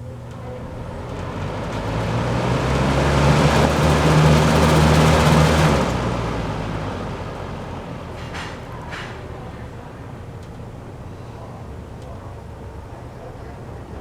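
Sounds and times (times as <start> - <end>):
box fan air rush: 0.0 - 8.0
low motor hum: 0.0 - 10.8.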